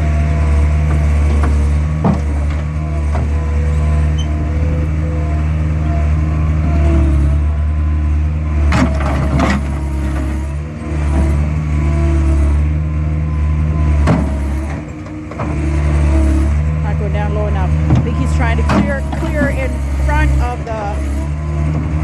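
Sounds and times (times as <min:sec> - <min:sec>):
skid steer engine running: 0:00.0 - 0:22.0.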